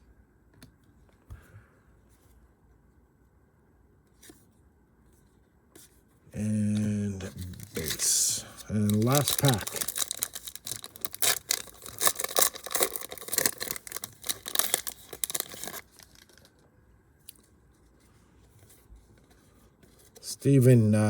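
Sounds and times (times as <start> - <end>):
wrapper tearing and crinkling: 7.3 - 16.6.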